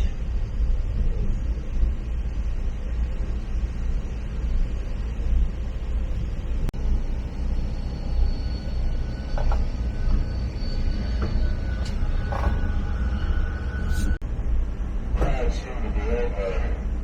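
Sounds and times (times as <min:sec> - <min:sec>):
faint high whine: 0:00.0 - 0:16.9
train rumbling on rails: 0:00.0 - 0:17.0.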